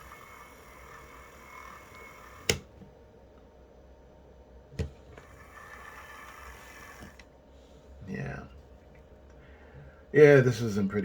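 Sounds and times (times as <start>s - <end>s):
model train motor whining: 0.0s - 2.6s, 5.1s - 7.2s.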